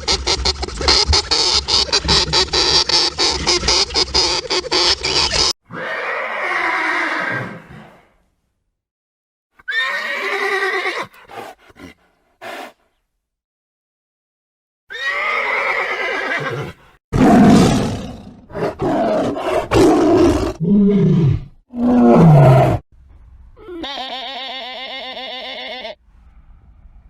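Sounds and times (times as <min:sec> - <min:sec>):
rough roar-like animal calls: 0:16.4 - 0:22.8
goat or sheep bleating: 0:23.6 - 0:26.0
pitched animal call: 0:23.6 - 0:26.0.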